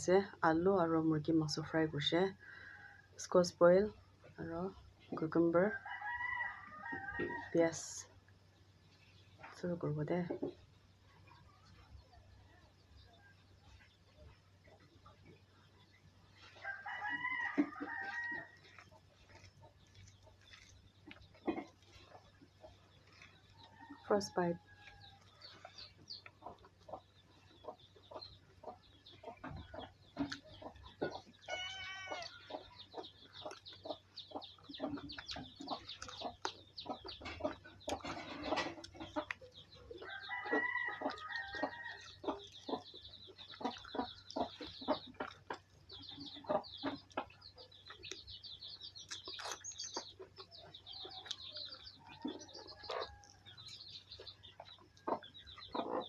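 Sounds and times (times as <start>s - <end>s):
chewing and crunching: 13.6s - 56.0s
wet mouth clicks and smacks: 49.0s - 49.8s.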